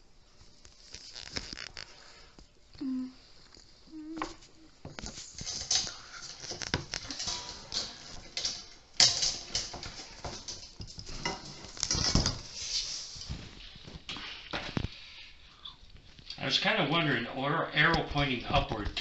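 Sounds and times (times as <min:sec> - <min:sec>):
rustling: 0:00.2 - 0:16.5
metal parts clinking and knocking: 0:05.4 - 0:12.4.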